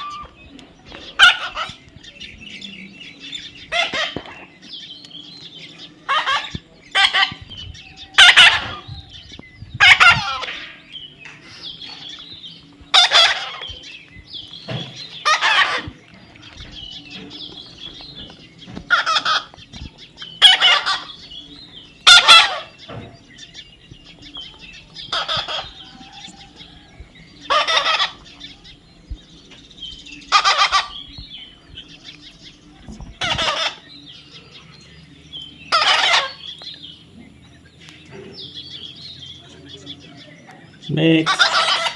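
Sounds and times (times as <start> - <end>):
parrot squawking: 6.1 - 7.4, 8.2 - 8.9, 9.8 - 10.6, 12.9 - 13.6, 15.2 - 16.0, 18.9 - 19.5, 20.4 - 21.2, 22.0 - 22.8, 25.0 - 25.8, 27.5 - 28.2, 30.3 - 31.0, 33.2 - 33.8, 35.7 - 36.4, 41.2 - 41.9.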